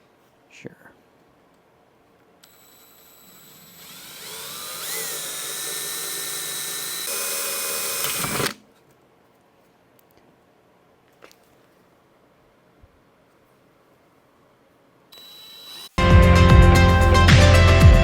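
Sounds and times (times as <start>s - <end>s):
power drill whining: 2.4s - 8.6s, 15.2s - 16.0s.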